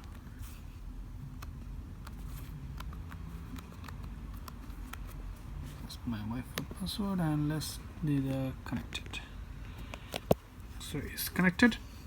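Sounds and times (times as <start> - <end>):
low steady hum: 0.0 - 12.0
laptop keyboard typing clicks: 1.3 - 5.2.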